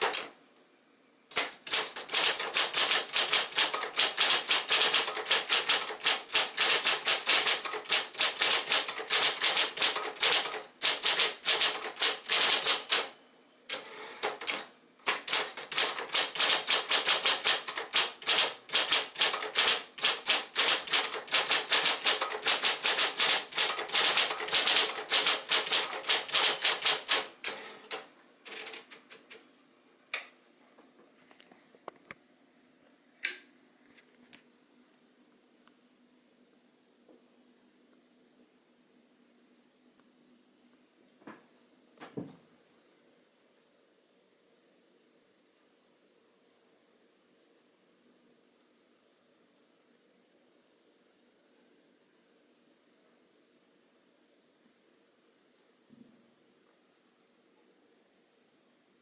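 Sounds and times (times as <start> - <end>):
typewriter keystroke clacks: 0.0 - 0.3, 1.3 - 13.1, 13.7 - 29.4
faint steady hum: 0.0 - 59.0.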